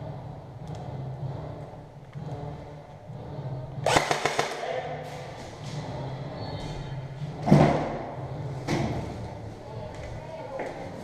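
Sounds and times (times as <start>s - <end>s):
low steady hum: 0.0s - 10.9s
airsoft gun firing burst: 3.8s - 4.7s.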